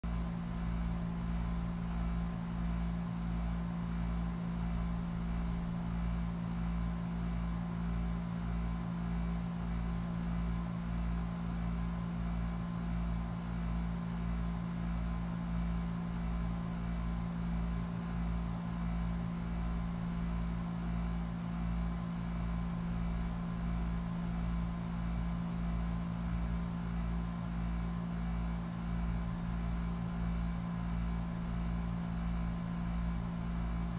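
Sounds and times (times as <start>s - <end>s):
hvac unit humming and throbbing: 0.0s - 33.9s.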